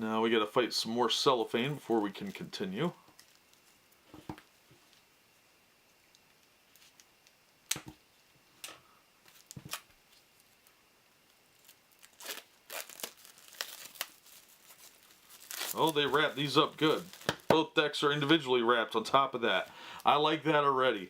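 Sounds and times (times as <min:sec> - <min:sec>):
cellophane crinkling and tearing: 0:09.3 - 0:17.6.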